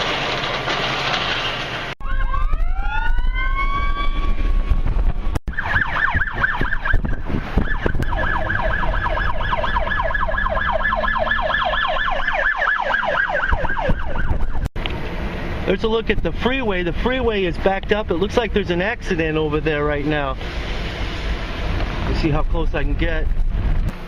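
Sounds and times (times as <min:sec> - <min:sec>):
emergency siren wailing and yelping: 0:02.0 - 0:14.7.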